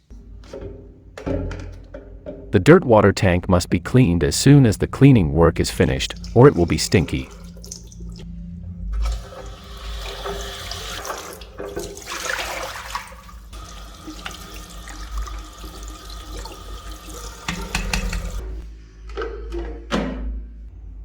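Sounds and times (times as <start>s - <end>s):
tap water splashing into sink: 9.0s - 18.6s.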